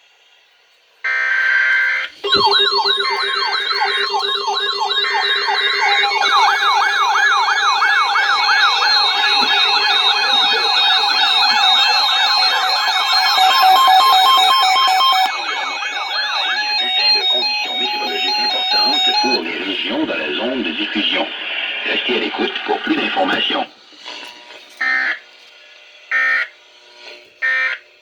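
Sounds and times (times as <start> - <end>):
electronic siren alarms wailing: 1.1 - 20.4, 24.8 - 25.3, 26.1 - 26.5, 27.4 - 27.8
steady tones: 2.2 - 19.8
data tones screech: 2.2 - 20.4.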